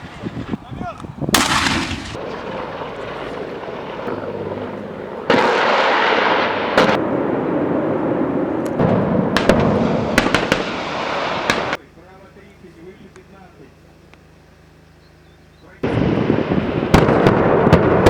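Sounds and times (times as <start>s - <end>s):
continuous rumbling: 0.0s - 18.0s
gunfire sharp cracks: 1.3s - 7.0s, 8.4s - 11.8s
heavy weapon blasts: 1.3s - 7.0s.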